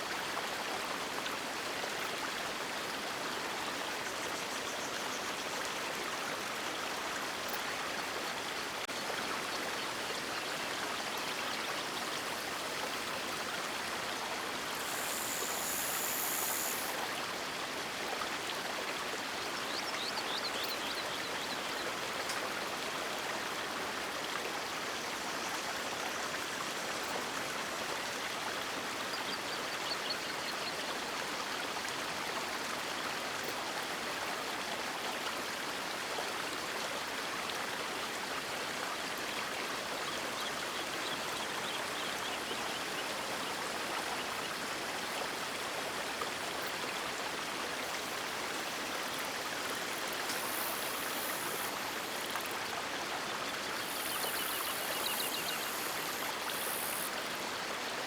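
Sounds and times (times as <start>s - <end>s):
brief high-pitched hiss: 14.8s - 17.0s
river water rushing: 44.8s - 58.0s
faint high chirps: 53.8s - 57.0s.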